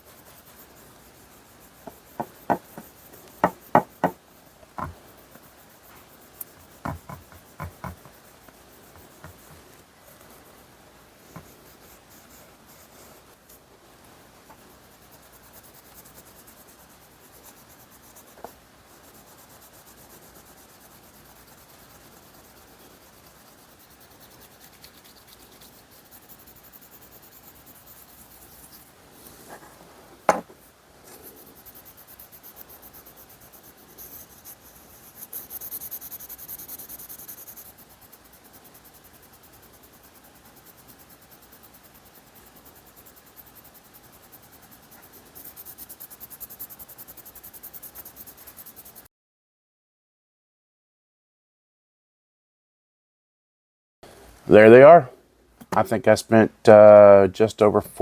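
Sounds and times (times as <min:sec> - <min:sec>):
rubbing and scraping on pliers: 0:22.6 - 0:29.8.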